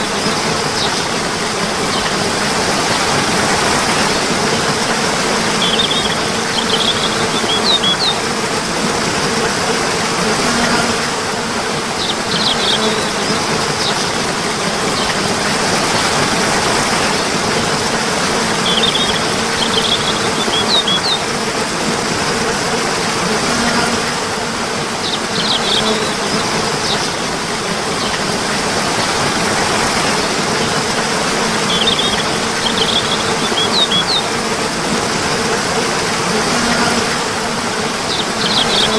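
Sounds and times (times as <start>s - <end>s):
stream water rushing: 0.0s - 38.9s
high bird chirps: 5.6s - 8.2s, 18.6s - 21.2s, 31.7s - 34.3s, 38.1s - 38.9s.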